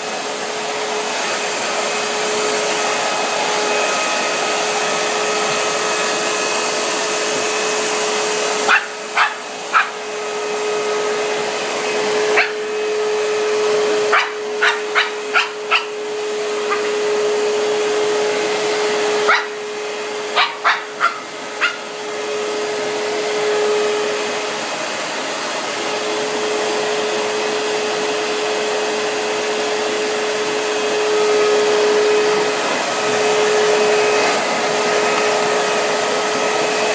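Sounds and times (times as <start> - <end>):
vacuum cleaner whirring: 0.0 - 36.9
dog barking: 8.6 - 10.0, 12.3 - 12.6, 14.1 - 16.0, 16.6 - 17.0, 19.2 - 19.6, 20.3 - 21.9.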